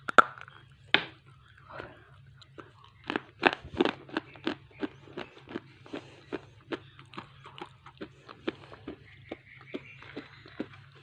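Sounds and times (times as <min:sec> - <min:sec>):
mouth chewing clay: 0:00.0 - 0:11.0.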